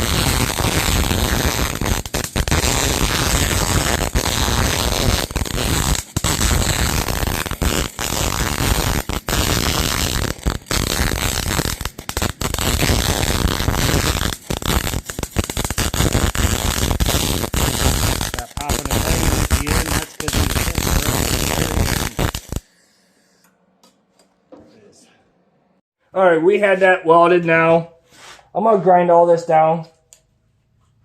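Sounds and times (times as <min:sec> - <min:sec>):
arc welder crackling: 0:00.0 - 0:22.6.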